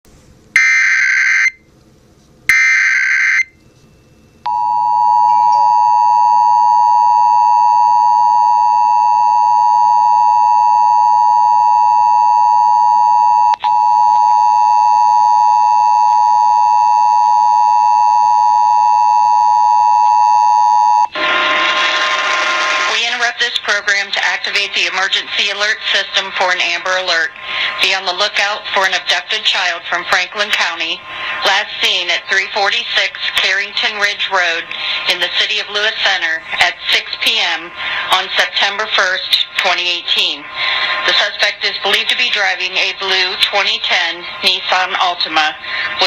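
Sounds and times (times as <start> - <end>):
announcer speaking: 22.9 - 40.5, 41.1 - 46.0.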